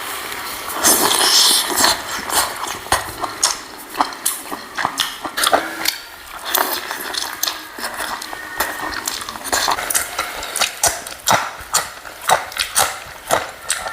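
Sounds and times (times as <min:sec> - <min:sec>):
person chewing and lip-smacking: 0:00.8 - 0:13.9
sharp wet clicks: 0:00.9 - 0:13.9.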